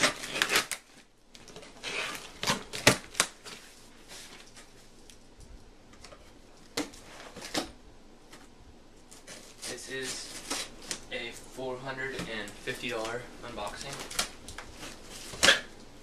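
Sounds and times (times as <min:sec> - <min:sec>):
cardboard scraping rustle: 0:01.4 - 0:02.8, 0:09.1 - 0:11.0, 0:11.6 - 0:15.5.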